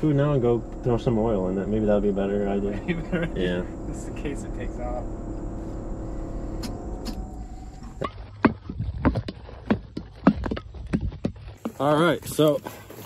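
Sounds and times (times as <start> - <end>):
vehicle engine running: 0.0 - 9.8
sharp knocks and clicks: 7.8 - 11.8.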